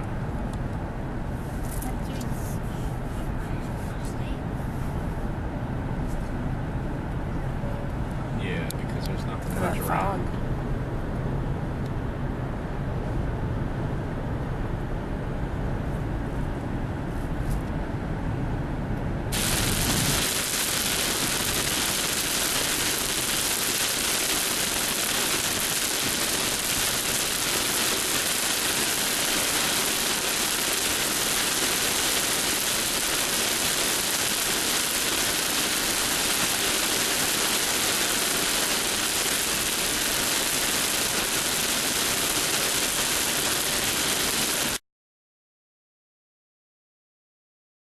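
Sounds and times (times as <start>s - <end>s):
steady hiss: 19.4s - 44.8s.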